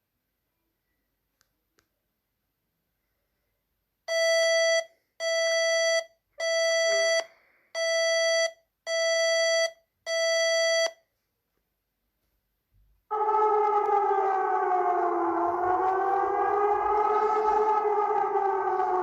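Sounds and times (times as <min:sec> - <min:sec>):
electronic alarm beeps: 0:04.1 - 0:11.0.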